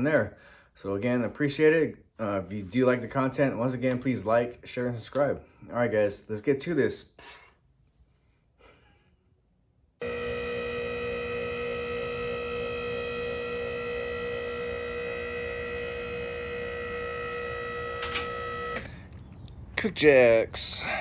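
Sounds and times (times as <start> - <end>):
hydraulic pump whining: 10.0 - 19.2.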